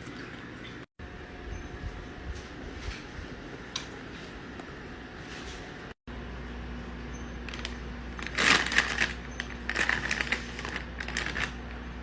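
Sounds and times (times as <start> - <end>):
food crinkling and crunching: 7.4 - 11.8.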